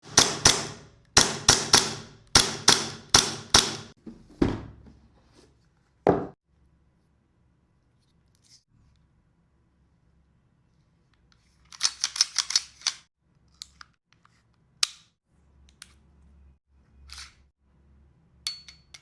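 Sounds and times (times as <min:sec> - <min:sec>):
airsoft pistol shots: 0:00.0 - 0:03.9.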